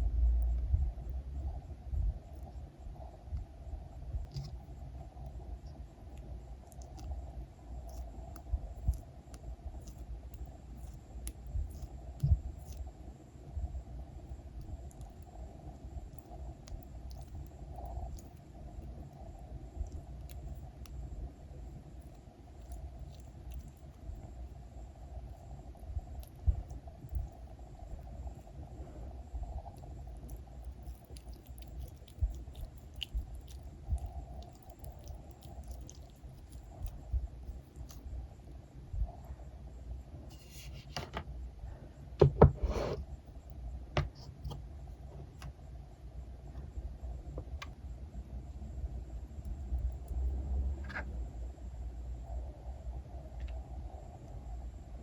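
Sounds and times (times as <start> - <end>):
thump: 42.2 - 42.9.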